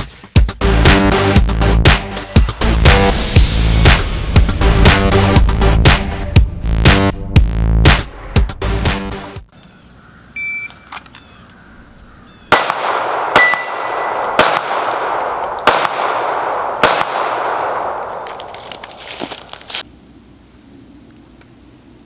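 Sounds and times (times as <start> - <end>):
metallic ringing of steel targets: 2.2 - 2.7, 12.5 - 15.2
pistol shots: 12.5 - 18.8.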